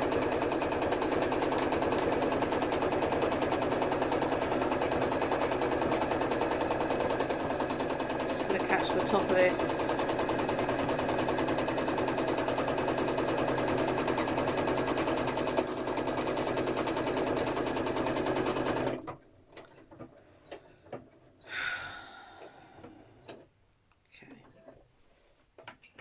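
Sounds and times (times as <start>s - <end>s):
sewing machine stitching: 0.0s - 21.2s
person sighing: 21.5s - 23.0s.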